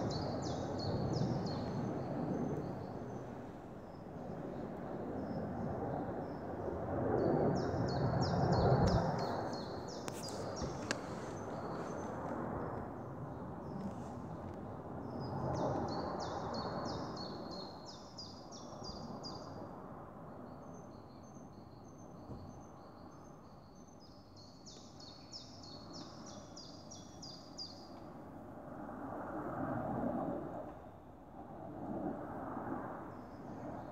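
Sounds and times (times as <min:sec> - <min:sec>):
low rumble in the sky: 0:00.0 - 0:24.1, 0:24.7 - 0:33.9
songbird chirping: 0:07.2 - 0:12.8.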